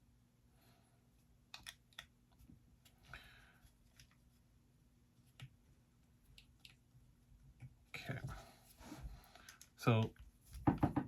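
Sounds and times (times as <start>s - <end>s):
small parts clicking: 1.5s - 2.1s.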